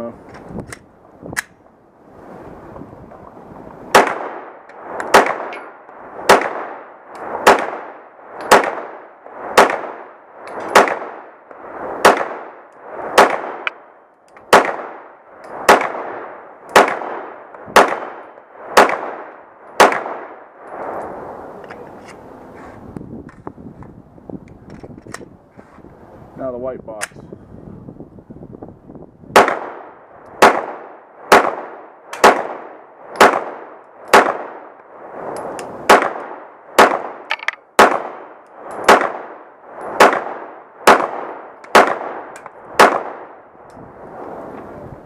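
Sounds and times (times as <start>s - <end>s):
pistol shots: 3.9s - 11.3s, 12.0s - 13.8s, 14.5s - 20.4s, 29.3s - 34.7s, 35.9s - 43.4s.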